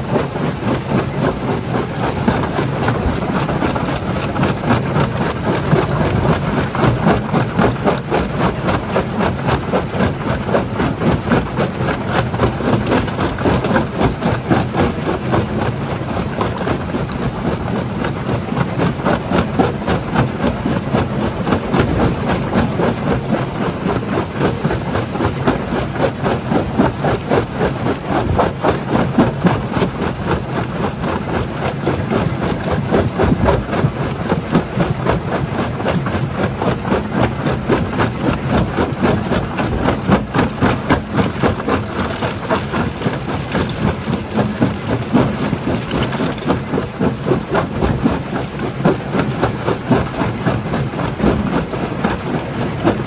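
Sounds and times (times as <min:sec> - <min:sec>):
rock crackling and clattering: 0:39.0 - 0:47.9.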